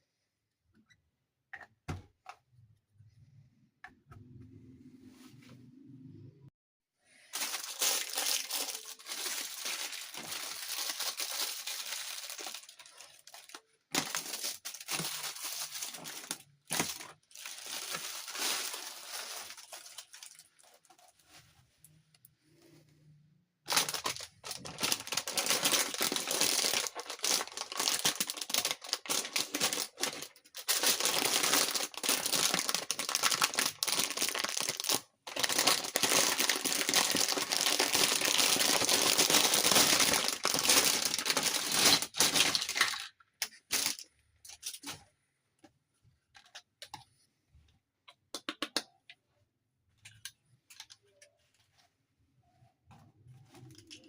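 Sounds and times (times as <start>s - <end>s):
plastic packaging crinkling: 7.3s - 21.2s, 23.7s - 45.0s.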